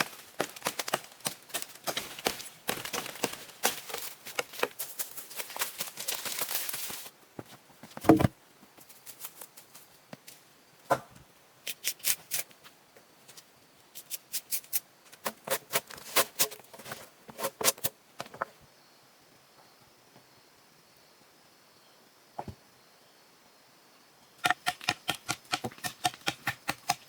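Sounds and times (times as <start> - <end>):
heavy thump: 8.0 - 8.4
sharp knocks and taps: 24.4 - 27.0.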